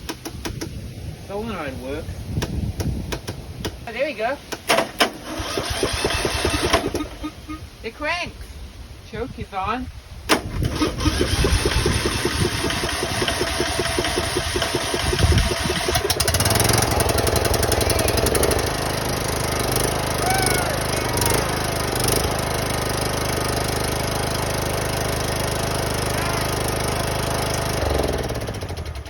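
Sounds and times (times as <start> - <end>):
mower engine cranking and running: 4.5 - 7.4, 10.3 - 29.0.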